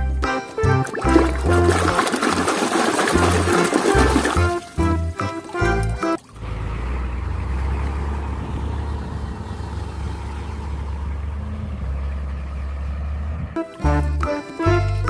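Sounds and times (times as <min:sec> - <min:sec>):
low engine rumble: 0:03.2 - 0:15.0.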